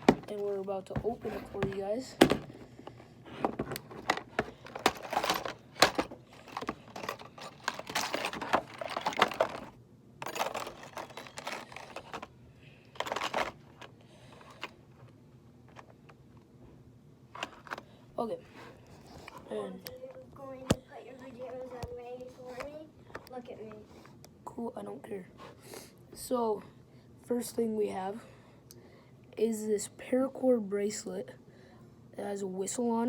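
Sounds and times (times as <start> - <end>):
packaging crinkling and rustling: 2.4 - 14.8.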